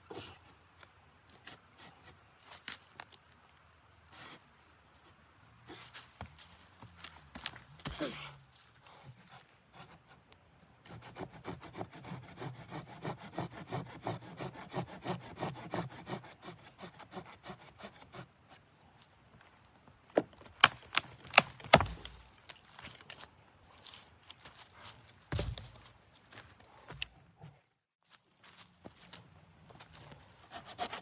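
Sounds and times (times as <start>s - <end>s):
hand saw rasping through wood: 10.8s - 18.4s, 30.5s - 31.0s.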